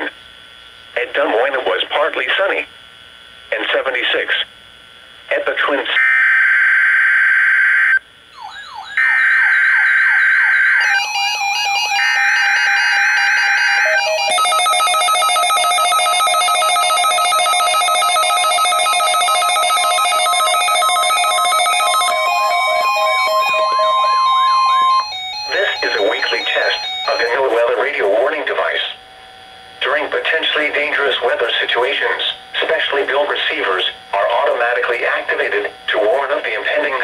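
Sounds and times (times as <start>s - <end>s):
harsh data bursts: 5.3s - 37.0s
swooping electronic chirps: 8.3s - 28.0s
steady chord of beeping tones: 8.3s - 29.1s.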